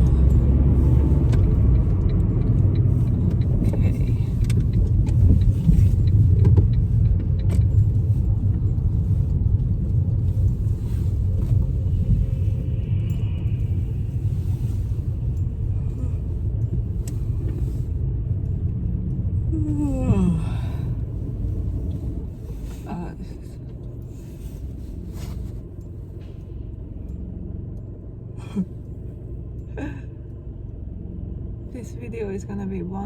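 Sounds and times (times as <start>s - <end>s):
car road and engine rumble: 0.0s - 33.0s
person yawning: 19.6s - 20.9s.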